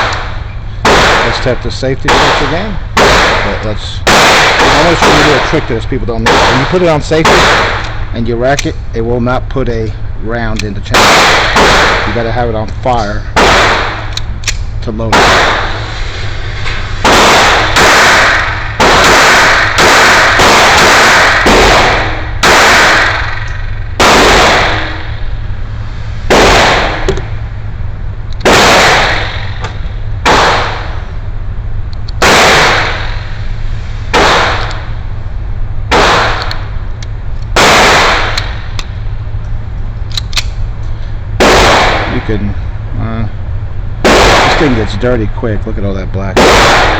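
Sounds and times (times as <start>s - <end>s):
pistol gunshots echoing: 0.0s - 8.0s, 10.9s - 12.3s, 13.4s - 14.1s, 15.1s - 15.8s, 17.1s - 25.2s, 26.3s - 27.1s, 28.4s - 29.6s, 30.2s - 31.0s, 32.2s - 33.2s, 34.2s - 34.8s, 35.9s - 36.6s, 37.6s - 38.6s, 41.4s - 42.3s, 44.0s - 44.9s, 46.4s - 46.9s
steady low rumble: 0.0s - 46.9s.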